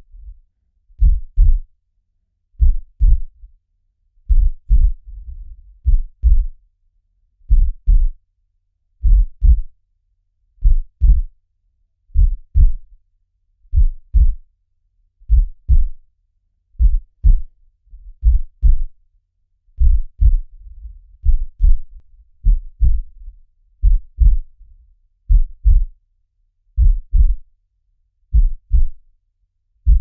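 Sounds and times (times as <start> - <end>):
heartbeat double thump: 1.0 - 1.7, 2.6 - 3.3, 4.3 - 6.5, 7.5 - 8.1, 9.0 - 9.7, 10.6 - 11.3, 12.2 - 12.8, 13.7 - 14.4, 15.3 - 16.0, 16.8 - 17.5, 18.2 - 18.9, 19.8 - 23.2, 23.8 - 24.5, 25.3 - 25.9, 26.8 - 27.4, 28.3 - 29.0.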